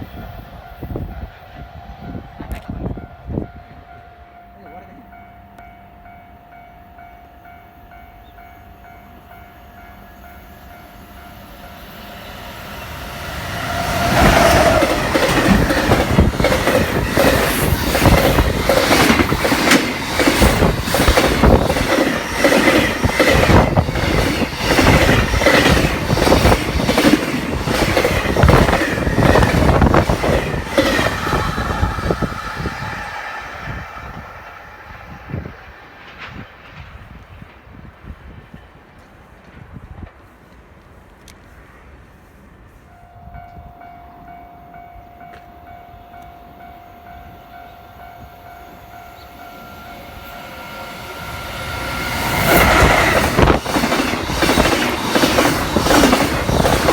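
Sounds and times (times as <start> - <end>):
freight train passing: 0.0 - 56.9
wheels clacking over rail joints: 13.0 - 33.1, 50.3 - 56.9.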